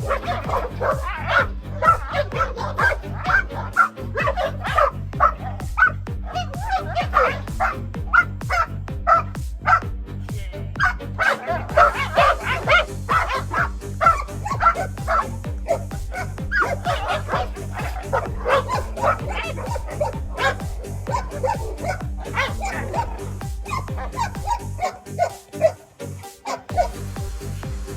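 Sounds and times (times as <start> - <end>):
dog barking: 0.0 - 9.8, 10.8 - 25.8, 26.4 - 27.0
background music: 0.0 - 27.9.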